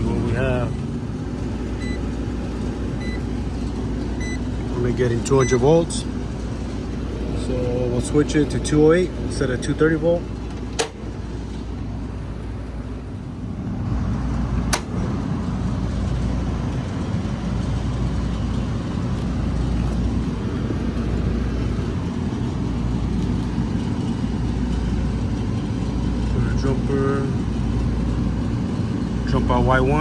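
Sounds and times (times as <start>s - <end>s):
hvac equipment humming: 0.0s - 30.0s
sharp click: 10.7s - 11.0s, 14.7s - 15.0s.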